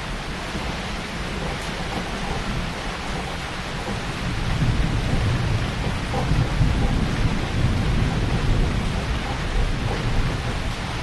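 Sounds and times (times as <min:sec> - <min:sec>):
heavy rain pouring: 0:00.0 - 0:11.0.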